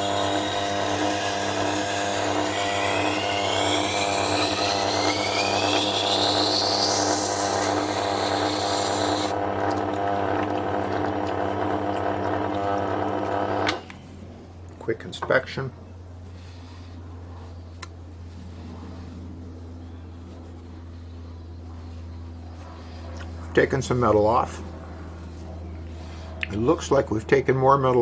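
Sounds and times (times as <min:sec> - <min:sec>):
grinder motor hum: 0:00.0 - 0:14.0.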